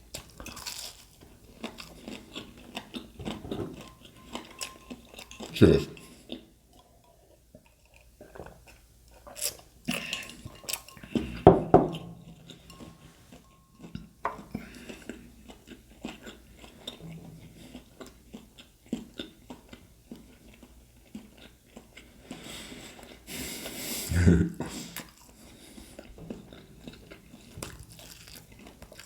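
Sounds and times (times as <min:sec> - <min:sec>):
person chewing: 0:00.0 - 0:06.5, 0:07.1 - 0:11.4, 0:12.0 - 0:29.0
cutlery and dishes clinking: 0:03.2 - 0:06.1, 0:09.3 - 0:14.5.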